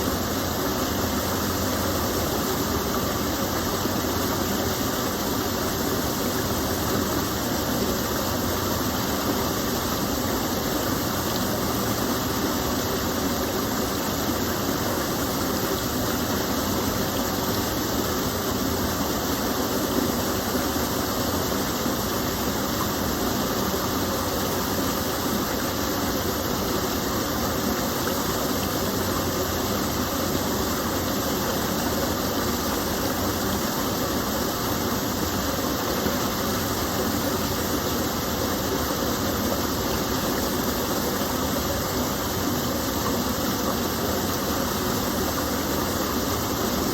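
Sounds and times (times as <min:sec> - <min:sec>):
small waterfall rushing: 0:00.0 - 0:46.9.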